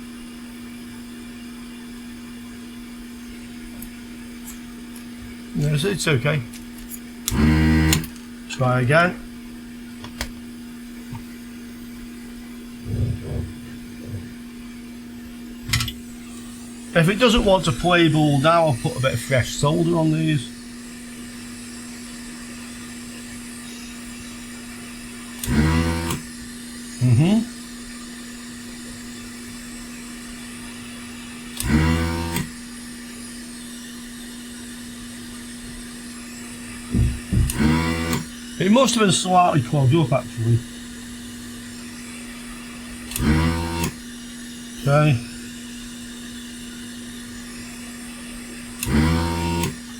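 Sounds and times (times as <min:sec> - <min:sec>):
hot air station whir and hum: 0:00.0 - 0:49.9
vacuum pump bursts: 0:05.5 - 0:09.2, 0:12.8 - 0:14.8, 0:15.6 - 0:27.6, 0:30.8 - 0:49.9
desoldering gun click: 0:06.5 - 0:08.2, 0:48.8 - 0:49.8
steady bench hum: 0:10.8 - 0:21.5.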